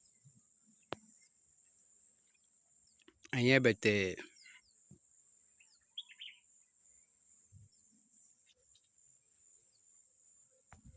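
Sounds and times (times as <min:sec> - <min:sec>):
faint insect chirping trill: 0:00.0 - 0:10.9
short bird chirp: 0:06.0 - 0:06.4.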